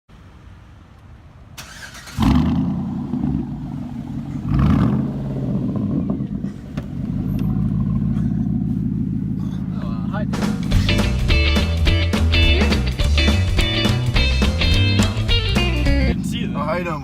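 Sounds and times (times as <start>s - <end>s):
engine cranking: 1.6s - 2.7s
engine running: 1.6s - 16.8s.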